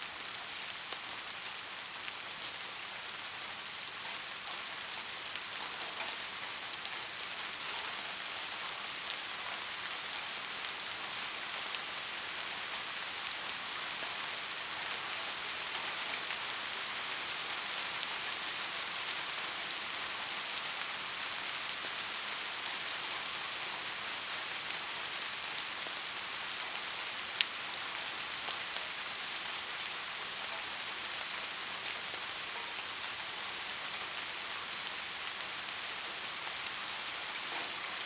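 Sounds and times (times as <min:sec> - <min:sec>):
steady rain falling: 0:00.0 - 0:38.0
raindrop ticks: 0:04.0 - 0:10.8, 0:37.2 - 0:38.0.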